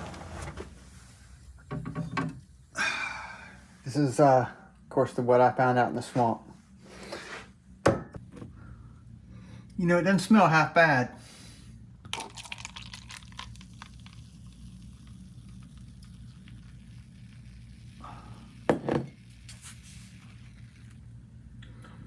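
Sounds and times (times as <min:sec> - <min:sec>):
steady low hum: 0:00.0 - 0:22.0
faint liquid sounds: 0:12.1 - 0:21.9.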